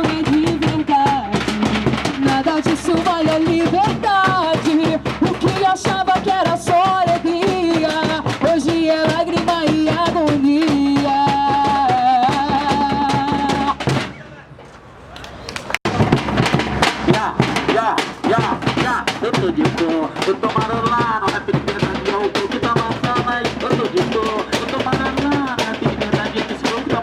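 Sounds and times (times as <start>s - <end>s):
fast dense percussion: 0.0s - 14.2s, 15.8s - 27.0s
live band music: 1.3s - 3.0s.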